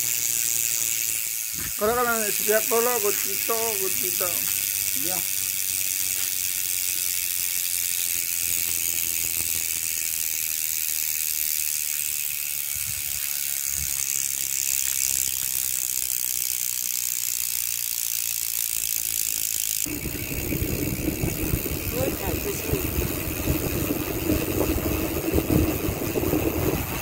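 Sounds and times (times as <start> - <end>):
bicycle hub freewheel clicking: 0.0 - 27.0
low rumble: 19.9 - 27.0.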